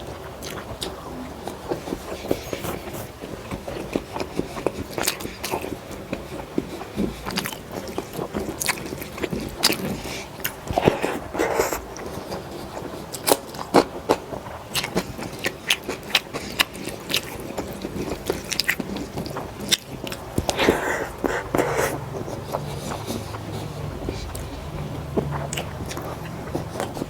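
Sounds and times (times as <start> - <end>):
person chewing food: 0.0 - 27.0.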